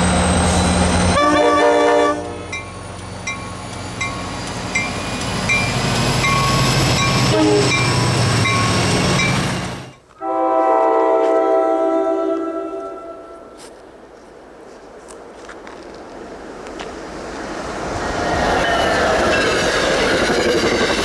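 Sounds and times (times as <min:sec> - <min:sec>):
train passing: 0:00.0 - 0:21.0
train horn: 0:01.0 - 0:02.5, 0:07.1 - 0:08.0, 0:10.2 - 0:13.7.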